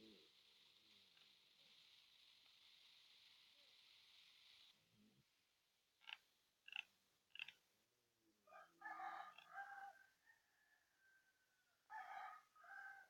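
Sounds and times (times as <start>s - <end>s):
rooster crowing: 8.5s - 13.0s.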